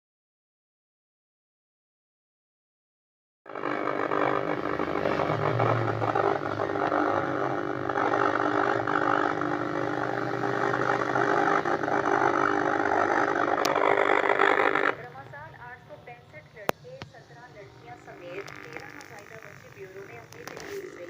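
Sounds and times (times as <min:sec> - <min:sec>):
steady humming tones: 0:03.5 - 0:21.0
television speaker buzzing: 0:03.5 - 0:21.0.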